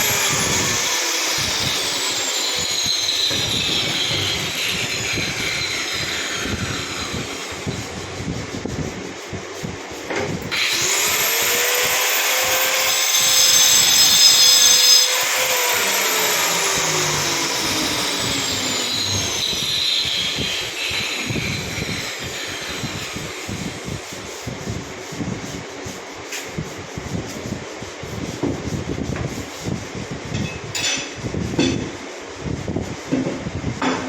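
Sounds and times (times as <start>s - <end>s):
power tool motor whining: 0.0s - 8.3s, 10.5s - 24.0s
low knocks and rubbing: 3.3s - 9.4s.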